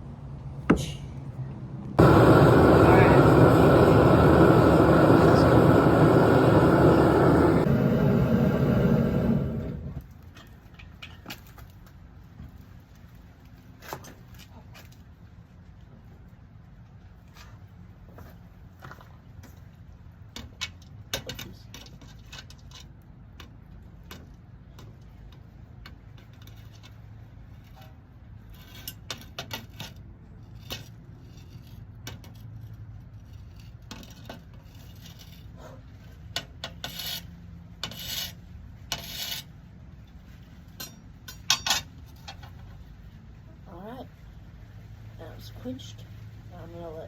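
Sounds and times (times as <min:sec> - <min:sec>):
low steady hum: 0:00.0 - 0:11.2
hot metal quenching hisses: 0:02.0 - 0:10.0
metal clinks and scrapes: 0:26.0 - 0:39.5.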